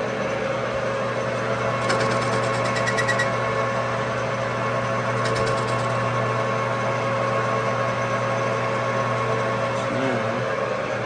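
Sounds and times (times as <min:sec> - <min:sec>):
metal lathe humming: 0:00.8 - 0:04.3.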